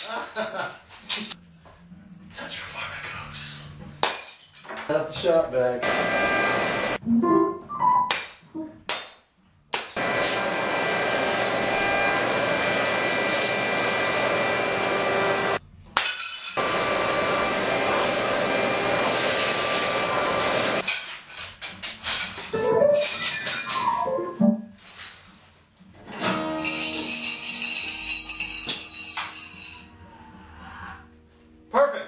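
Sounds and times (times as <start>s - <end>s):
rattling and clinking: 26.2s - 29.9s.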